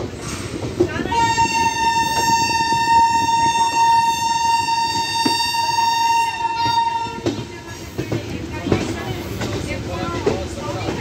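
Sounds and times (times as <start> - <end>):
train rumble: 0.0 - 11.0
locomotive horn blast: 1.1 - 7.3.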